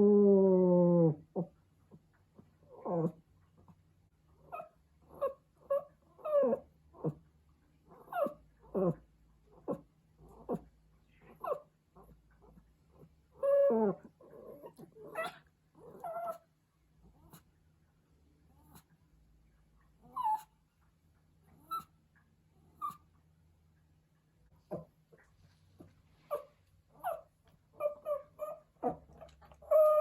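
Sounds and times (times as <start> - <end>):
puppy whining: 2.7 - 3.2, 4.4 - 7.2, 7.9 - 10.7, 11.3 - 16.5, 20.0 - 20.6, 21.5 - 22.0, 22.7 - 23.1, 24.7 - 30.0.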